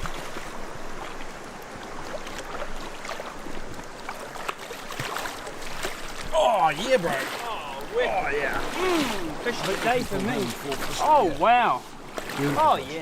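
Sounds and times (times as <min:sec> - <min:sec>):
river water flowing: 0:00.0 - 0:13.0
small splashes and ticks: 0:00.0 - 0:13.0.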